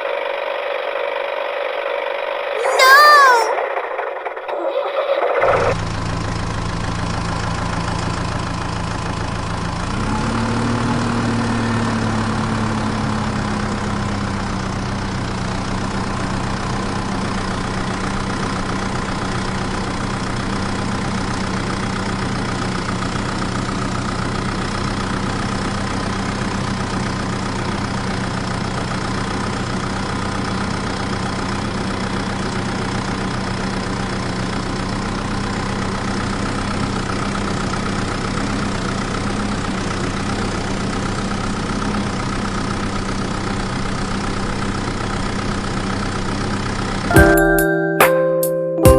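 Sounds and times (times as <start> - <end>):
tractor engine idling and revving: 0.0 - 2.6, 3.5 - 48.2.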